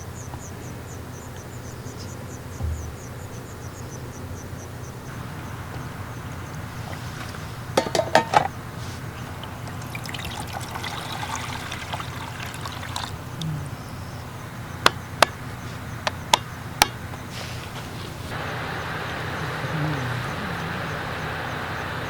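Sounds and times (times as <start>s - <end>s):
liquid pouring into container: 9.0s - 13.4s.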